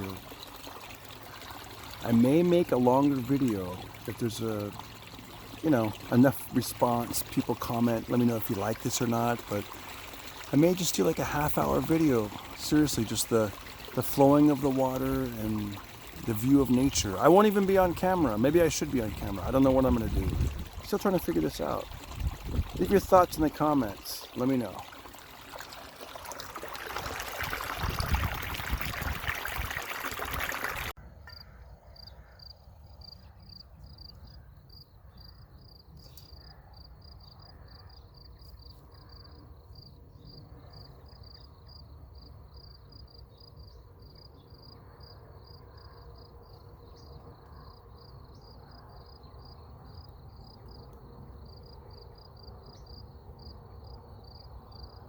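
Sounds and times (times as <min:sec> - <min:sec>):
stream water babbling: 0:00.0 - 0:31.0
insects chirping: 0:01.2 - 0:29.2, 0:30.2 - 0:55.0.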